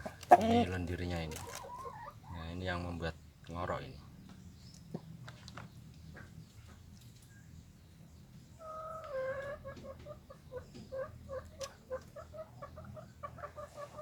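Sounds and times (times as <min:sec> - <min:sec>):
rooster clucking: 0:00.0 - 0:02.3, 0:08.6 - 0:14.0.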